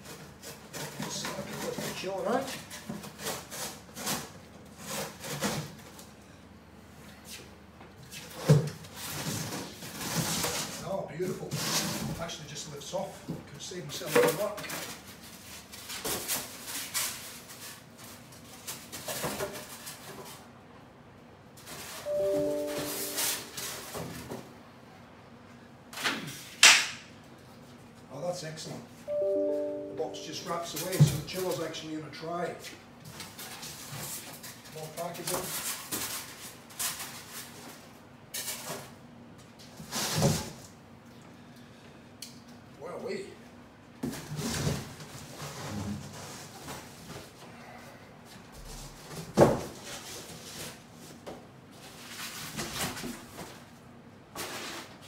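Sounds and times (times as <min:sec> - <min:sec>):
cardboard rustling and scraping: 0:08.0 - 0:12.2, 0:48.6 - 0:53.7
cardboard and foam rustling: 0:08.1 - 0:12.4, 0:14.0 - 0:20.4, 0:33.1 - 0:38.9, 0:48.4 - 0:55.0.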